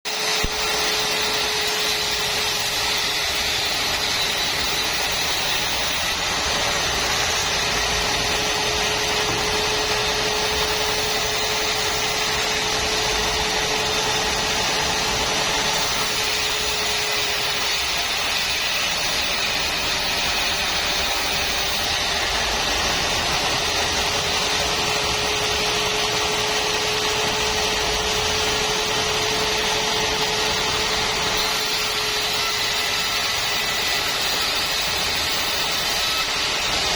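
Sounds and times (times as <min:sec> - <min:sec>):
sawmill saw whining: 0:00.1 - 0:36.9.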